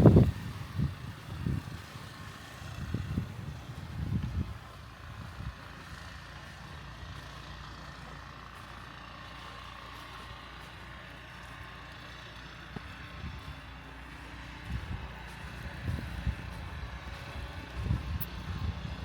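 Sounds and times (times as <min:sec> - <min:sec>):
wind buffeting microphone: 0:00.0 - 0:05.7, 0:14.6 - 0:19.0
steady low rumble: 0:14.6 - 0:19.0.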